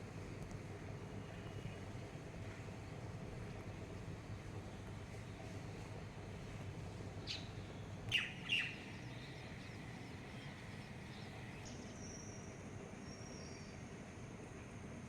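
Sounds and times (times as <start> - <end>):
low background rumble: 0.0 - 12.5
bird chirps: 7.2 - 12.4.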